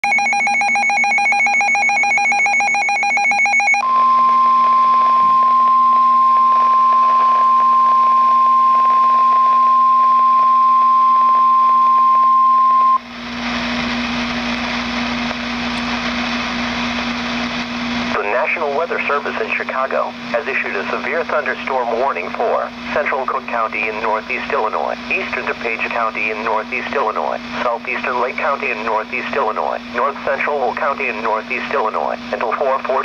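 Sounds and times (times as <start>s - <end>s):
single-pitch warning alarm tone: 0.0s - 13.1s
radio static hiss with hum: 6.4s - 9.6s, 13.0s - 33.0s.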